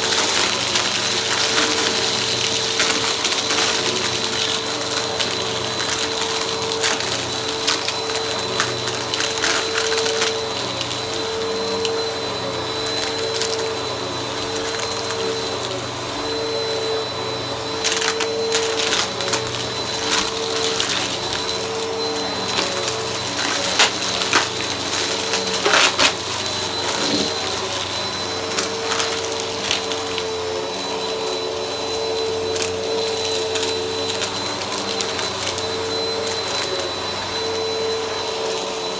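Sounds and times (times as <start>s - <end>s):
debris clicking in vacuum: 0.0s - 11.0s, 17.8s - 30.3s
vacuum cleaner running: 0.0s - 38.9s.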